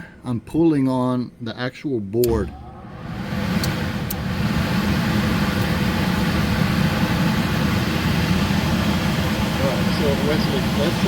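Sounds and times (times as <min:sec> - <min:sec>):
furnace blower humming: 0:02.2 - 0:11.0.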